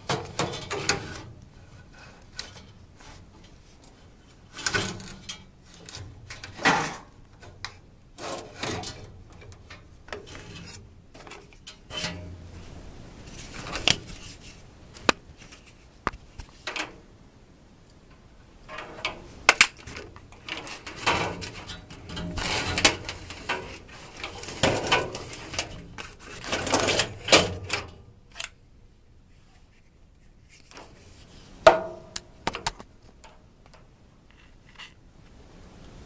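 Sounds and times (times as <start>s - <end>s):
filter clattering and scraping: 0.0s - 3.6s, 4.5s - 15.8s, 18.7s - 28.5s.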